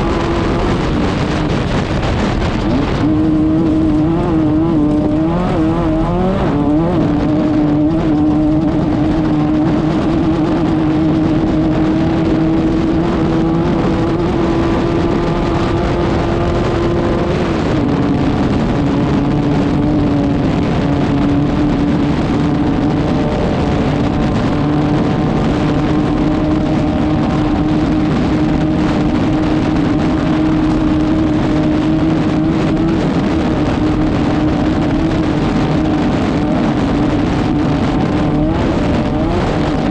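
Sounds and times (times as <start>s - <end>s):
race car engine at high revs: 0.0s - 39.9s
rushing noise: 0.0s - 39.9s.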